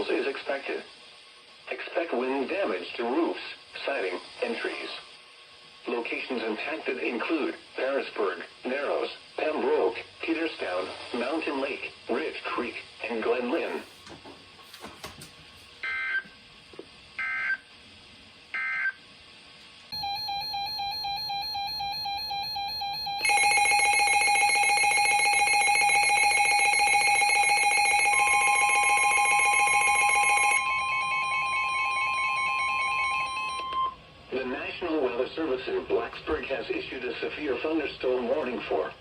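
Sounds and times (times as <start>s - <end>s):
steady pure tone: 19.9s - 35.8s
data tone bursts: 20.0s - 34.0s
multi-tone electronic alert: 20.0s - 34.0s.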